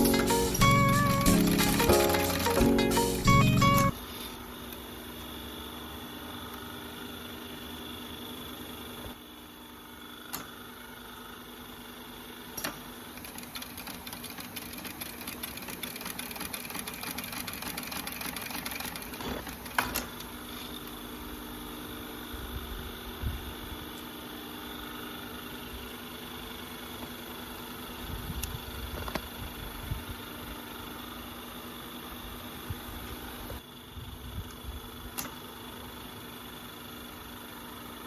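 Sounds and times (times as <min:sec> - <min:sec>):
sewing machine stitching: 0:00.0 - 0:02.9, 0:13.2 - 0:20.2.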